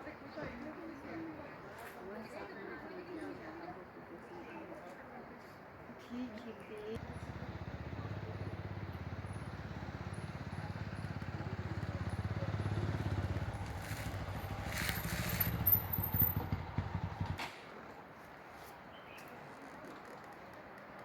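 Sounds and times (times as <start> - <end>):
motorcycle engine chugging: 7.0 - 17.4.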